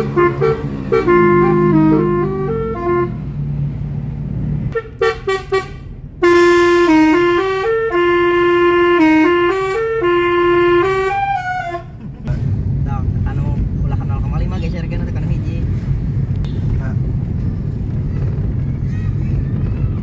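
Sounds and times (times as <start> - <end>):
multi-tone vehicle horn: 0.0 - 3.4, 4.7 - 12.0
low engine hum: 0.0 - 20.0.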